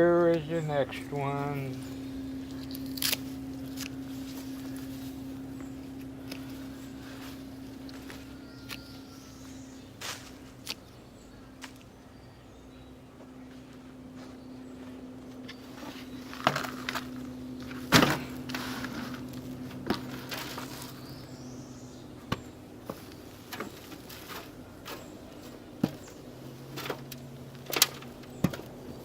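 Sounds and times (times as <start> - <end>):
steady low hum: 0.0 - 29.0
potatoes and soil knocking rustling: 15.6 - 21.2, 22.3 - 29.0.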